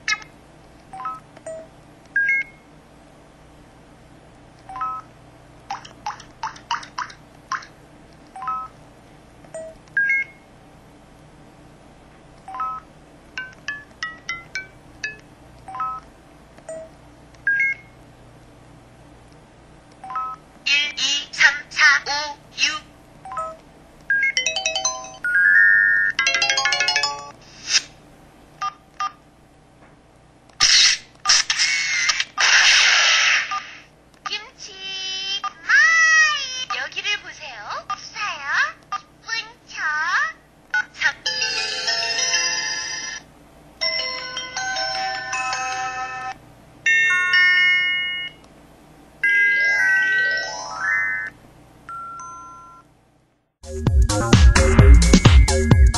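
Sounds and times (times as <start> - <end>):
electronic ringtone melody: 24.2 - 27.4, 49.2 - 52.8
phone jingle: 24.2 - 27.4, 51.9 - 52.9
two-note phone chime: 51.9 - 52.8.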